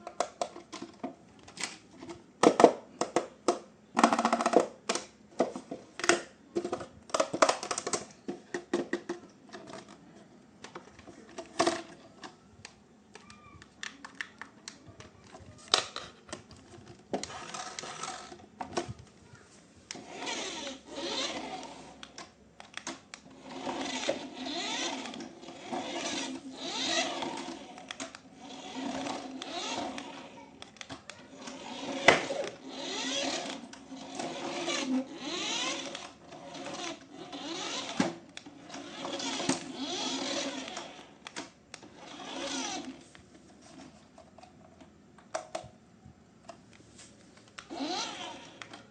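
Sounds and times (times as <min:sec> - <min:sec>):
scattered clicks and knocks: 0:02.4 - 0:10.0
toy electric motor whirring: 0:17.2 - 0:18.4, 0:19.9 - 0:22.2, 0:22.9 - 0:43.1, 0:47.6 - 0:48.9.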